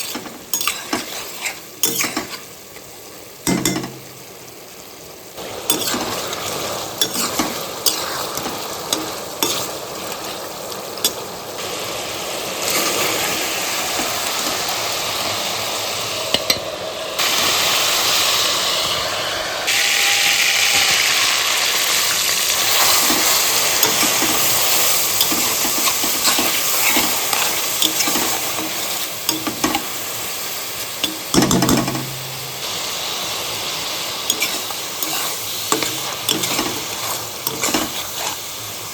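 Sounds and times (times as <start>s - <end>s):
spatula scraping metal pan: 0.0s - 2.4s, 7.0s - 9.8s, 34.3s - 38.4s
food sizzling in a pan: 0.0s - 38.9s.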